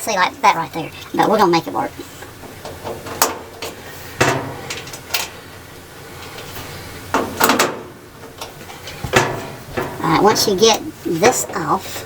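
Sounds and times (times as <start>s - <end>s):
metal panels clunking: 2.0s - 11.7s.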